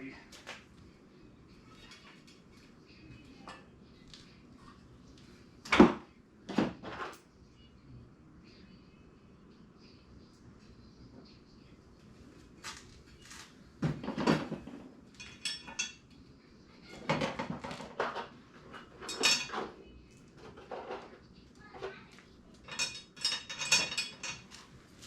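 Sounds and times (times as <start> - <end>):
metal tools clanking: 14.2 - 16.0, 18.7 - 19.7, 22.6 - 24.6.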